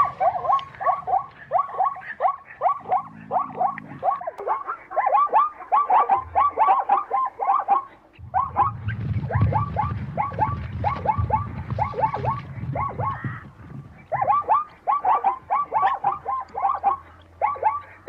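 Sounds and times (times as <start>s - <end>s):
zebra yelping barks: 0.0s - 18.0s
low rumble: 8.2s - 14.1s.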